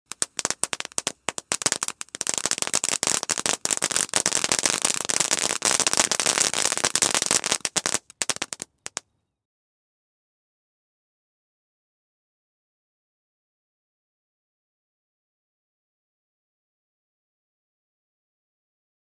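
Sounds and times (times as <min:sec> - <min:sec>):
firework fountain crackling: 0:00.1 - 0:09.0.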